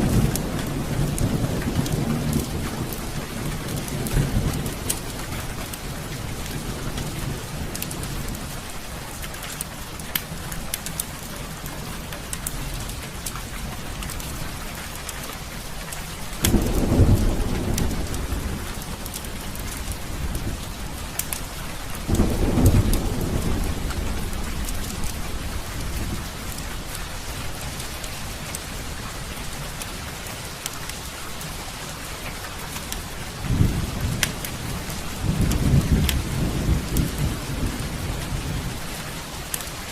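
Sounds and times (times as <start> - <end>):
deep thunder rumbles: 0.0 - 8.5, 16.3 - 30.1, 32.9 - 39.3
heavy rain falling: 0.0 - 39.9.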